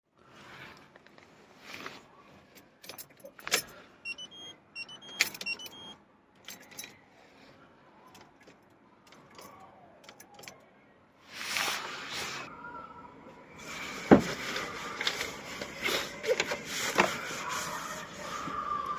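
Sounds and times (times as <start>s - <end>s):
car keys jangling: 2.8s - 4.3s, 5.0s - 7.0s
short high electronic beeps: 4.1s - 6.0s.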